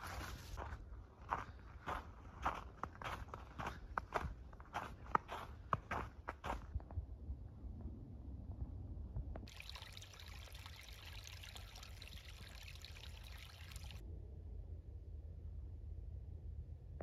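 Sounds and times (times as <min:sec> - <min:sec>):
low rumble: 0:06.6 - 0:09.4, 0:14.0 - 0:17.0
water trickling in a stream: 0:09.4 - 0:14.0.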